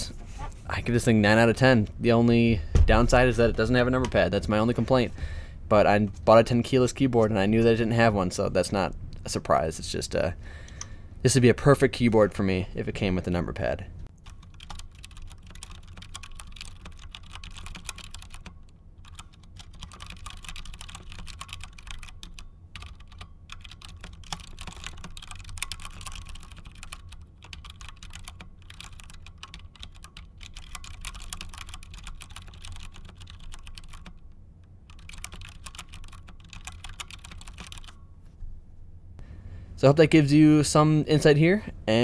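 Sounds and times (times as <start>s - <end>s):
fast typing on mechanical keyboard: 14.2s - 38.0s.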